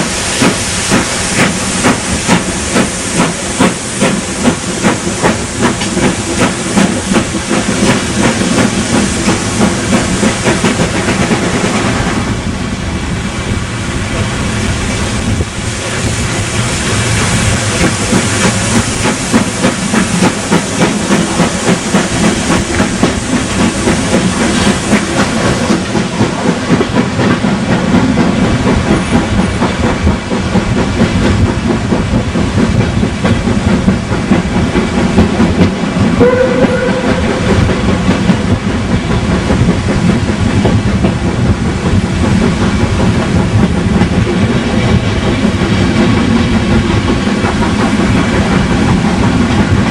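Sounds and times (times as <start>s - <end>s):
train wheels clattering on rails: 0.0s - 49.9s.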